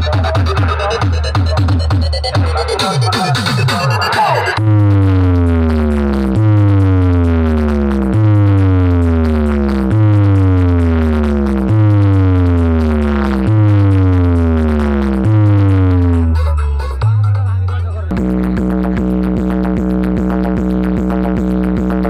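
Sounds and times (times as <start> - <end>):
deep bass note: 4.6 - 22.0.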